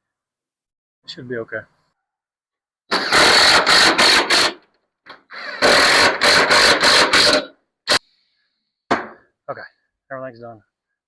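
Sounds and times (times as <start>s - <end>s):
cordless drill driving screws: 2.9s - 8.0s.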